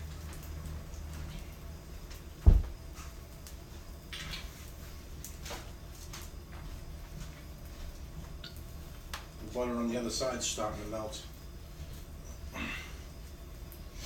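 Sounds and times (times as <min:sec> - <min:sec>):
heavy thump: 0:02.4 - 0:02.8.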